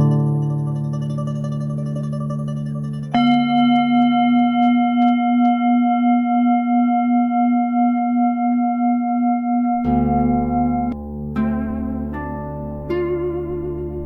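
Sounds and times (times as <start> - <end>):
bell-like ringing tone: 3.2 - 11.0.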